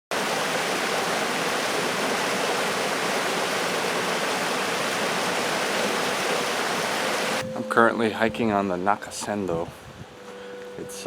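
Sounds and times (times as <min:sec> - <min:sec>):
flowing stream water: 0:00.1 - 0:07.4.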